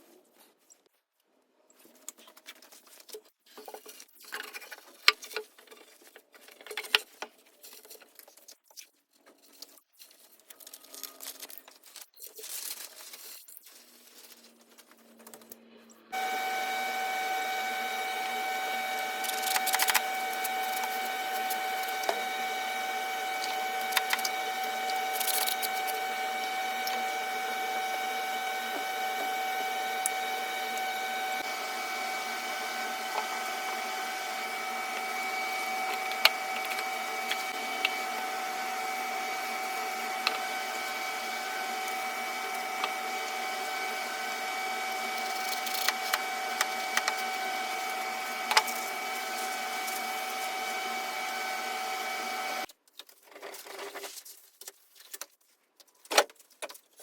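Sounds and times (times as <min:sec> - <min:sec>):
small electric motor whining: 0:15.4 - 0:52.7.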